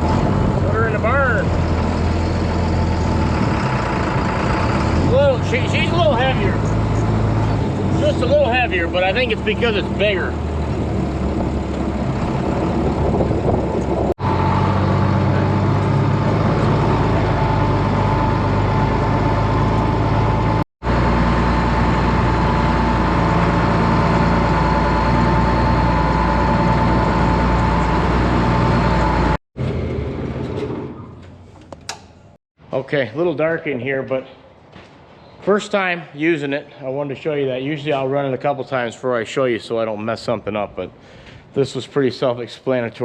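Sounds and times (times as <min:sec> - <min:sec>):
tractor engine running: 0:00.0 - 0:32.2.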